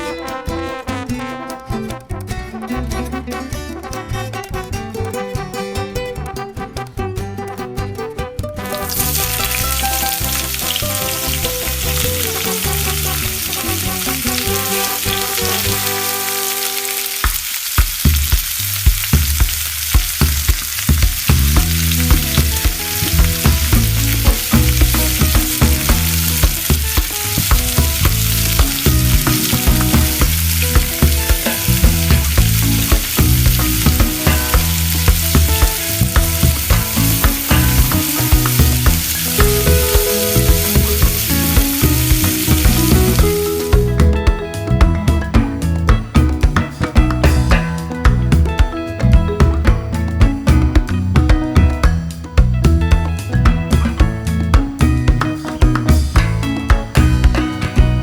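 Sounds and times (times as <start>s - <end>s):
background music: 0.0s - 17.5s, 19.4s - 58.0s
food sizzling in hot oil: 8.7s - 43.9s.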